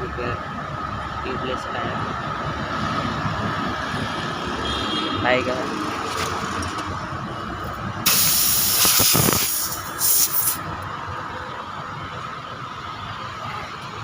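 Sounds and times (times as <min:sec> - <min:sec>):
compressed air hissing: 0:08.0 - 0:10.6.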